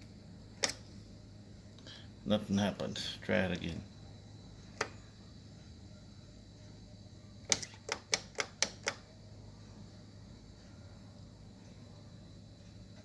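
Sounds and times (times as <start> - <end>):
refrigerator buttons clicking: 0.6 - 0.8, 7.5 - 9.1.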